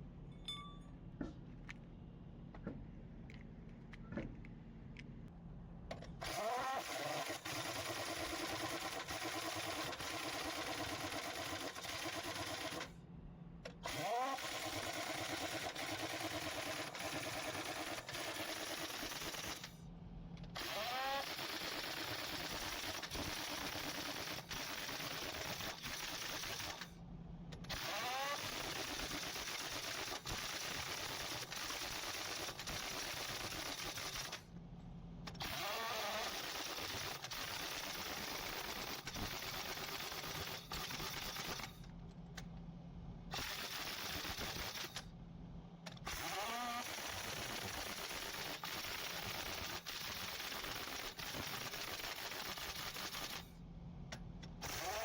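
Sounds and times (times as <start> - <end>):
drill hammering: 54.6 - 55.0.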